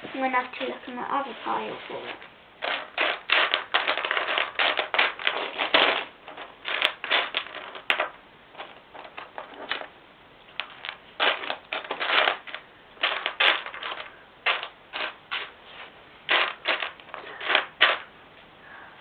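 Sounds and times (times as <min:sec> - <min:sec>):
plastic bricks clattering: 0:02.2 - 0:09.9, 0:10.5 - 0:15.5, 0:16.3 - 0:18.1.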